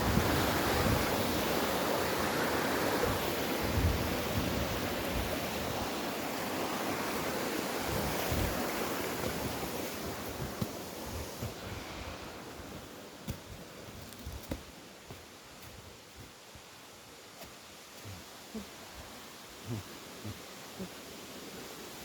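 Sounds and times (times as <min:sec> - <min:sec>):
wind buffeting microphone: 0:07.8 - 0:14.7.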